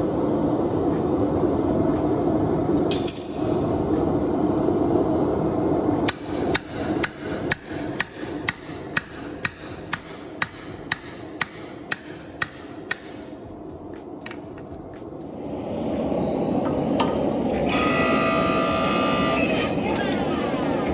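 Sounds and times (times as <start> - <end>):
steady rushing noise: 0.0 - 17.6
hammer striking steel on anvil: 6.0 - 15.0.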